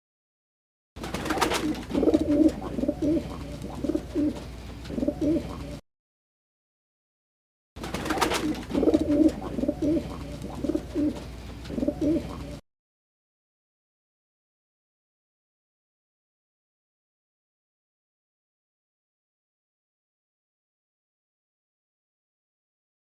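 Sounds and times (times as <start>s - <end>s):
pigeons cooing: 1.3s - 5.8s, 8.0s - 12.6s.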